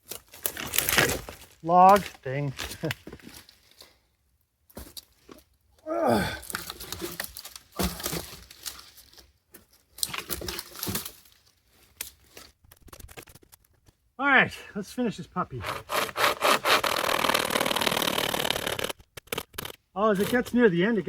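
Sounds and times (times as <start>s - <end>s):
objects rustling and knocking: 6.4s - 14.0s.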